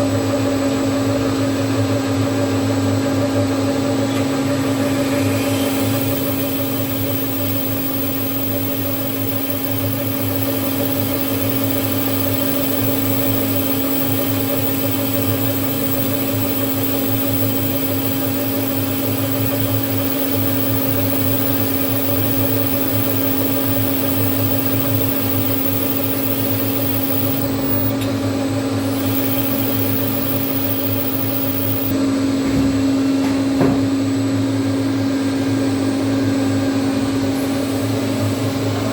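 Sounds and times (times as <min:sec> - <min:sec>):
machine humming with pitched tone: 0:04.1 - 0:32.0.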